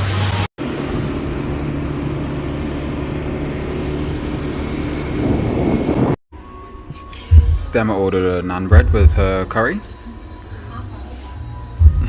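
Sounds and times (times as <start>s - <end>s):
road and wind noise: 0.0s - 6.2s
moped engine running: 0.6s - 6.2s.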